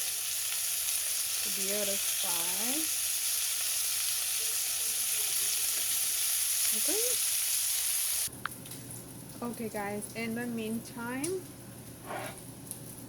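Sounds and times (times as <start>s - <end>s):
chicken sizzling in butter: 0.0s - 8.3s.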